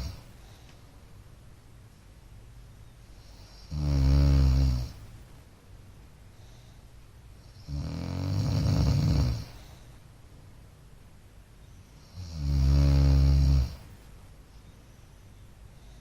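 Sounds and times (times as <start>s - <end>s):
man snoring: 0.0s - 0.2s, 3.4s - 5.0s, 7.6s - 9.6s, 12.1s - 13.8s.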